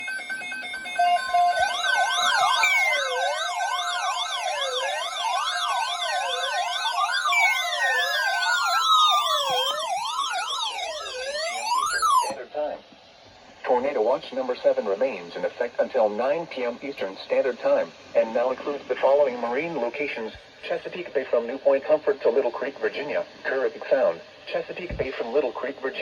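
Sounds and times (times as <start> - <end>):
electronic alert sirens warbling: 0.0 - 12.4.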